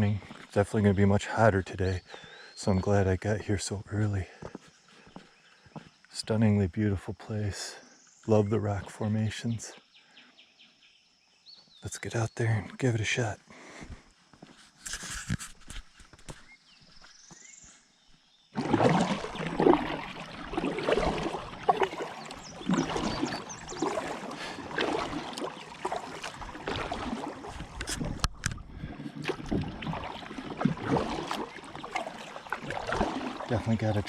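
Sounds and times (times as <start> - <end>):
paddle splashing water: 0.0 - 1.4, 18.6 - 34.0
water trickling: 18.6 - 34.0.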